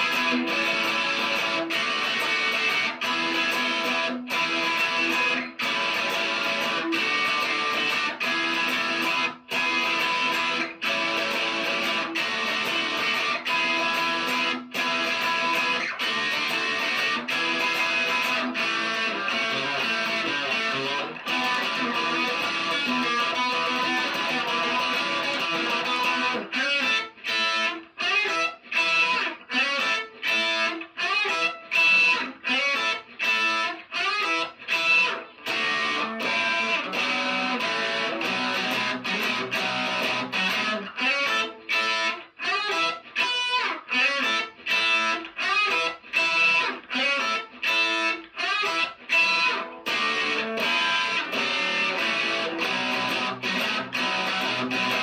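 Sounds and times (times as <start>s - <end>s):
electric guitar playing rock chords: 0.0s - 55.0s.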